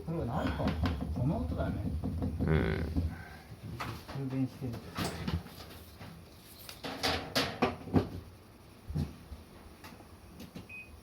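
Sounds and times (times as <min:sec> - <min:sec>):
dryer parts knocking and clicking: 0:00.4 - 0:06.2, 0:06.8 - 0:08.3.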